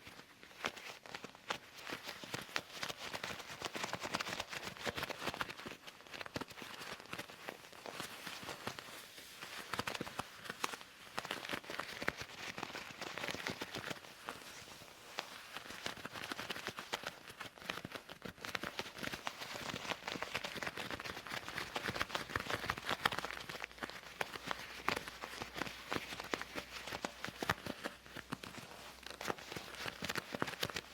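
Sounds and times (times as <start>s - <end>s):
leather gloves rubbing: 0.1s - 30.9s.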